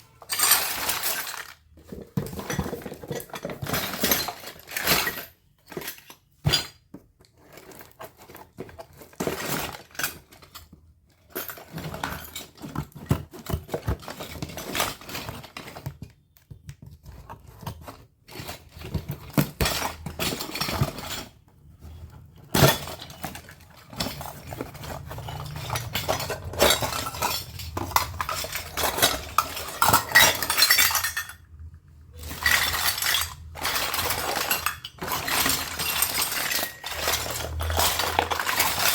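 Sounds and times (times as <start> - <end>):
toy dishes clinking: 22.5 - 38.9.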